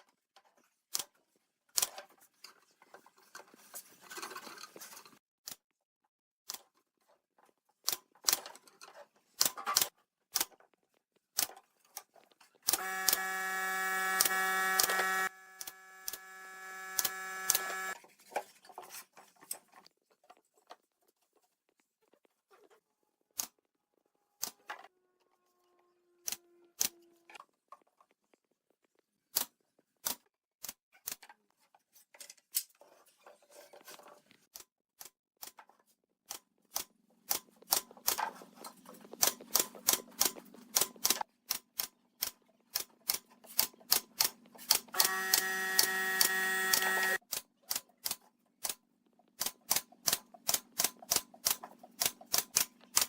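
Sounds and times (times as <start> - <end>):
small motorised tool running: 12.7 - 18.0, 44.7 - 47.2.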